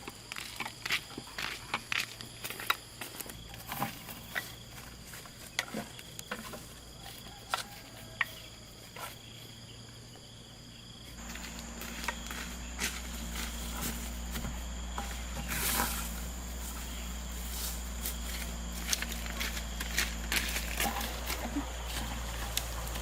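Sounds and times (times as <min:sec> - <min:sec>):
insects droning: 0:00.0 - 0:23.0
low steady hum: 0:11.1 - 0:23.0.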